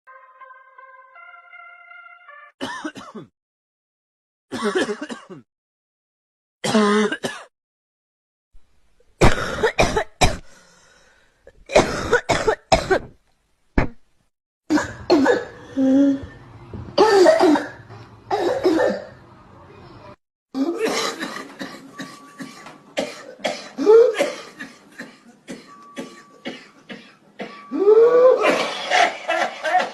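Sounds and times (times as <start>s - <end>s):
person coughing: 2.6s - 3.3s, 4.5s - 5.5s, 6.6s - 7.5s, 9.2s - 10.5s, 11.7s - 13.1s, 20.6s - 29.1s.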